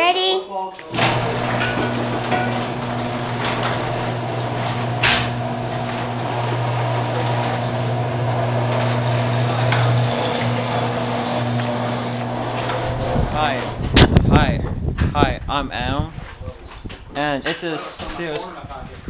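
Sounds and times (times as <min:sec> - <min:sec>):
door clunk: 0:00.9 - 0:14.2
garage door opener motor hum: 0:00.9 - 0:15.0.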